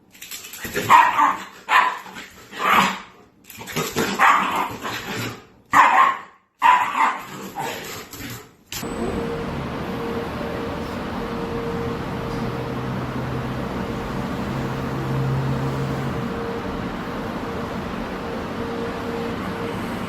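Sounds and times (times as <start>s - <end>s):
dog barking: 0.8s - 3.1s, 4.0s - 7.8s.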